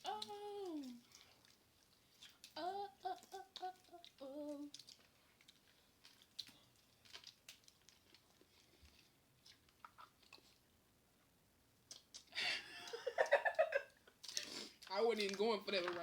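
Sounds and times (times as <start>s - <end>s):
person chewing food: 0.0s - 15.4s.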